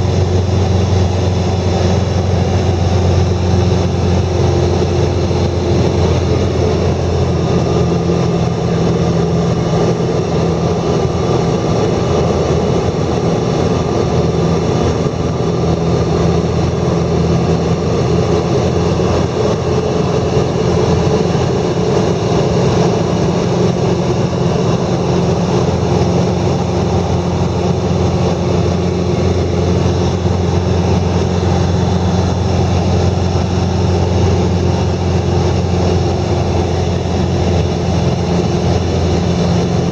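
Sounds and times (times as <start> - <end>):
engine humming steadily: 0.0 - 39.9.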